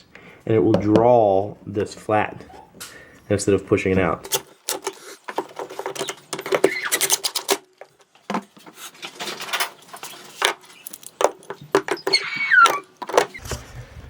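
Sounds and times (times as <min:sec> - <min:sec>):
hard objects clicking and knocking: 0:04.2 - 0:13.6.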